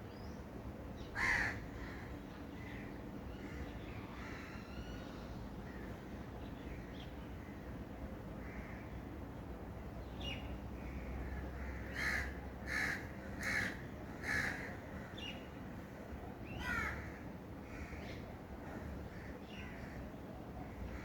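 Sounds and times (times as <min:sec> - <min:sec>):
loud bird calls: 0:01.0 - 0:06.0, 0:16.4 - 0:20.1.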